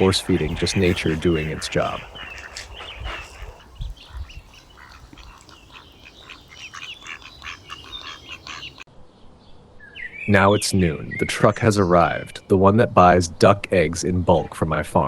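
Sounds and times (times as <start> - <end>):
ducks quacking: 0.0 - 8.9.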